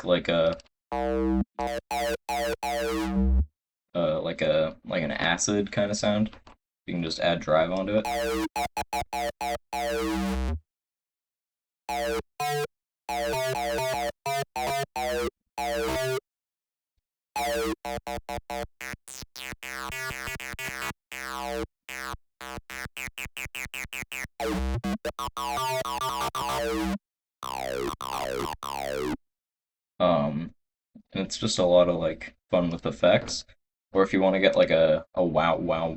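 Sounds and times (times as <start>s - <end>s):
squelchy acid synth bass: 0.9s - 3.4s, 8.0s - 10.6s, 11.9s - 16.2s, 17.4s - 29.2s.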